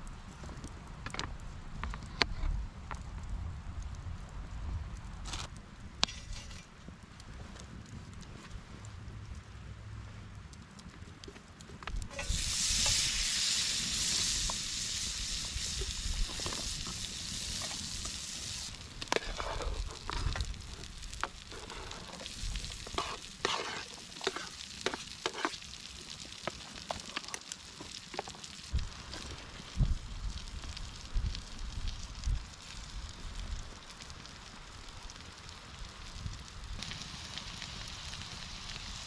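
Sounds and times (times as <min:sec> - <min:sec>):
food sizzling in a pan: 0:12.1 - 0:29.5, 0:36.8 - 0:39.0.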